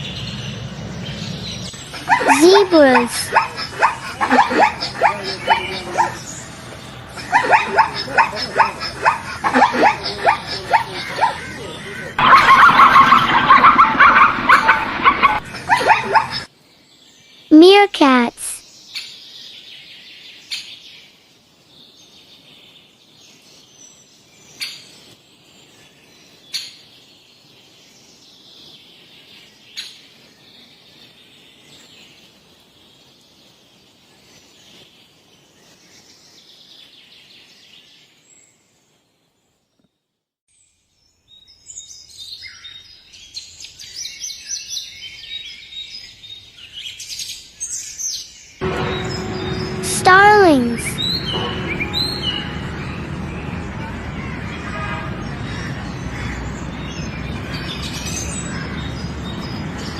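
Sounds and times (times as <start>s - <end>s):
birds chirping: 0.0s - 16.5s, 48.6s - 59.9s
meerkats chirping: 1.9s - 6.3s, 7.2s - 16.4s.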